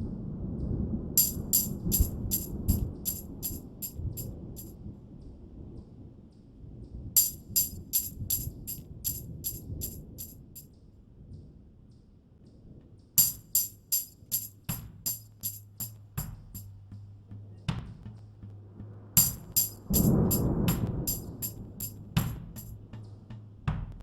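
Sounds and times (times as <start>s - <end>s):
music with tambourine beat: 1.2s - 4.8s, 7.2s - 10.7s, 13.2s - 17.0s, 17.7s - 18.1s, 19.2s - 24.0s
low rumble: 13.2s - 24.0s.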